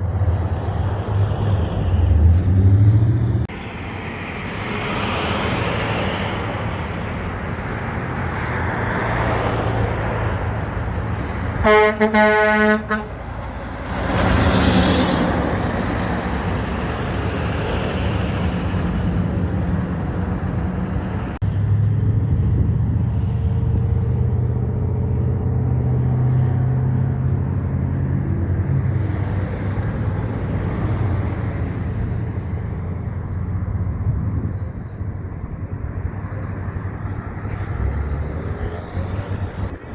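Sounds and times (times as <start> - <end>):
low truck engine drone: 0.0 - 39.9
truck engines passing: 0.0 - 39.9
truck rushing by: 0.0 - 39.9
truck horn blasts: 11.6 - 13.4.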